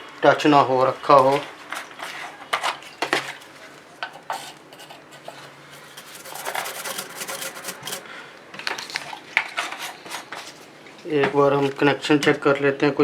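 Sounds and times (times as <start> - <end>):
brush scrubbing circuit board: 4.3 - 8.1.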